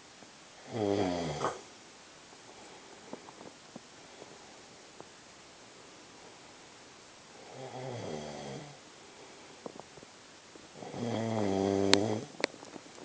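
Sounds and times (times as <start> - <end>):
man snoring: 0.6 - 1.6, 7.4 - 8.8, 10.8 - 12.4.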